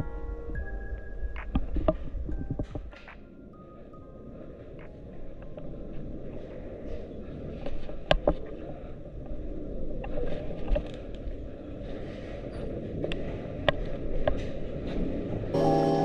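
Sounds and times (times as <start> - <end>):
wind on microphone: 0.0 - 3.0.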